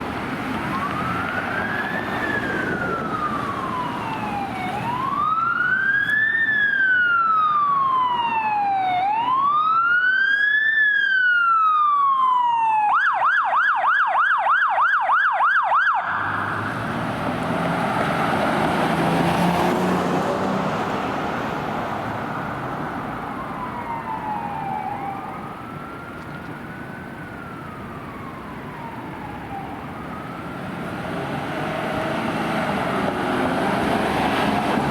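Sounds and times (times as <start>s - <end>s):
traffic noise: 0.0s - 34.9s
faint siren wail: 0.1s - 34.9s
electronic siren wailing and yelping: 0.7s - 16.8s, 23.2s - 30.5s.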